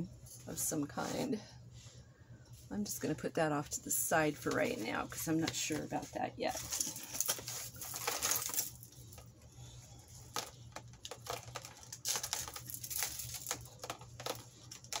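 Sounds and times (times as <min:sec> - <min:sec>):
metal jewelry clinking: 0:06.5 - 0:09.2, 0:11.2 - 0:14.9.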